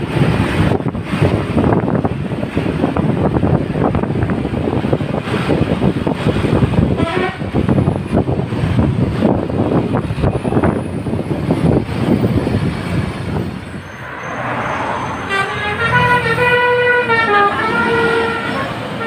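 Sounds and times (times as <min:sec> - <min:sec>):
road noise: 0:00.0 - 0:19.0
rumbling engine: 0:00.0 - 0:19.0
bus air horn melody: 0:06.9 - 0:07.7, 0:14.5 - 0:19.0.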